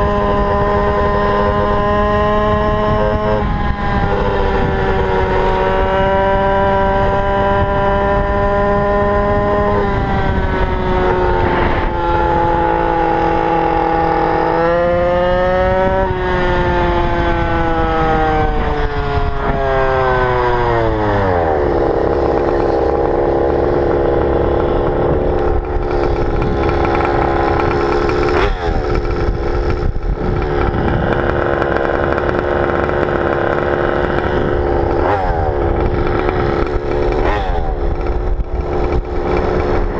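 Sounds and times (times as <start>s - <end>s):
two-stroke engine revving: 0.0s - 39.9s.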